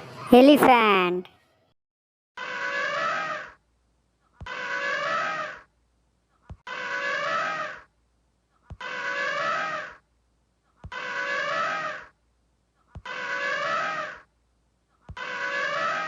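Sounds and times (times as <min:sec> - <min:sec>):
elephant trumpeting: 0:02.4 - 0:03.6, 0:04.5 - 0:05.7, 0:06.7 - 0:07.9, 0:08.8 - 0:10.0, 0:10.9 - 0:12.1, 0:13.0 - 0:14.3, 0:15.2 - 0:16.0.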